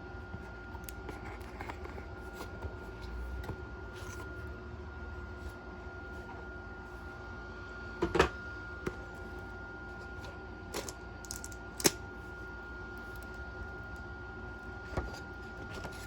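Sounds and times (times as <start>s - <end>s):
faint hum: 0.0s - 16.0s.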